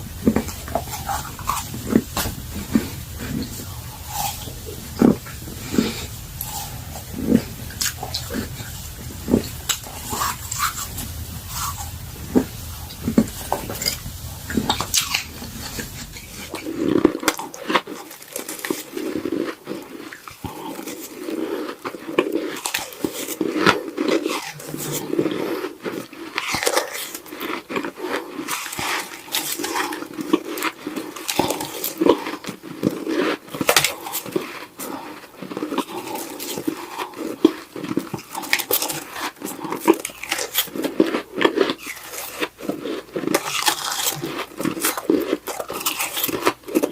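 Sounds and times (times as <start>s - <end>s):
low background hum: 0.0s - 17.2s
chewing frozen snow crunches: 0.0s - 46.9s.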